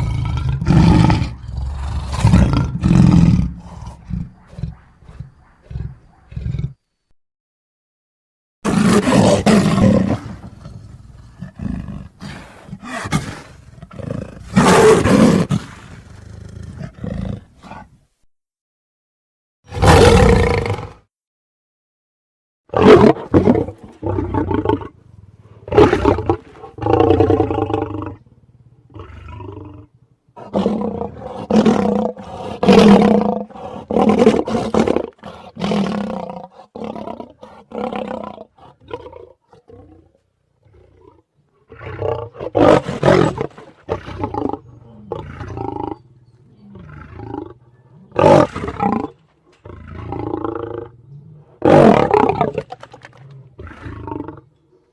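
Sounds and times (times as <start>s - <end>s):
lion roaring: 0.0s - 6.8s, 22.7s - 54.7s.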